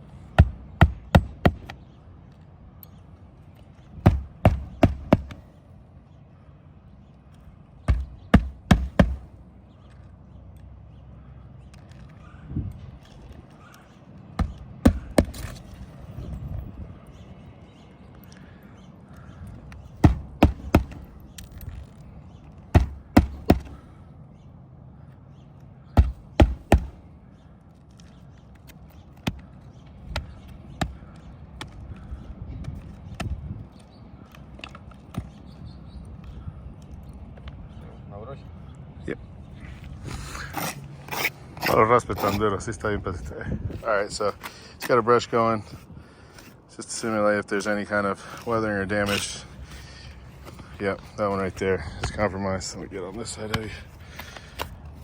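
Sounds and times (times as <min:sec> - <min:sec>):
hammer striking nails: 0:00.4 - 0:01.8, 0:04.0 - 0:05.4, 0:07.9 - 0:09.3, 0:14.4 - 0:15.6, 0:20.0 - 0:21.2, 0:22.7 - 0:23.9, 0:26.0 - 0:27.0
hand tool knocking on shingle roof: 0:00.4 - 0:01.8, 0:04.0 - 0:05.4, 0:07.9 - 0:09.3, 0:14.4 - 0:15.6, 0:20.0 - 0:21.2, 0:22.7 - 0:23.9, 0:26.0 - 0:27.0.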